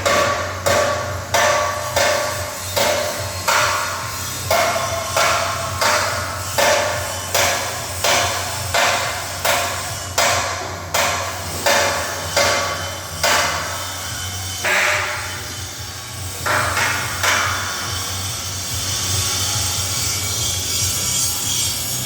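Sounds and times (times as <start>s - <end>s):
hammer striking metal: 0.0s - 19.2s.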